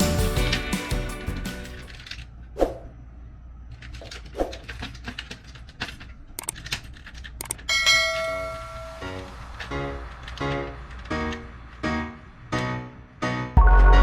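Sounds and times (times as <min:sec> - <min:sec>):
plastic parts clicking and tapping: 0:03.8 - 0:07.7
held musical note: 0:13.6 - 0:14.0.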